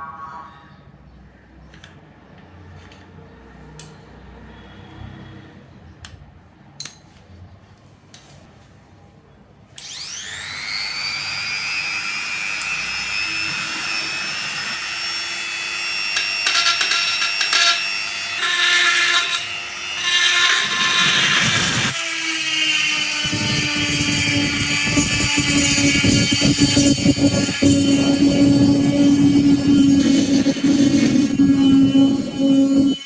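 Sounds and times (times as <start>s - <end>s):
grinder cutting steel: 9.8s - 33.0s
grinder motor whining: 9.8s - 33.0s.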